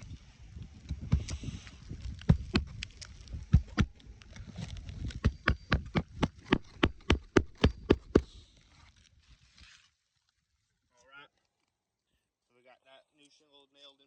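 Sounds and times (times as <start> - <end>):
hammer striking a nail: 5.2 - 8.3.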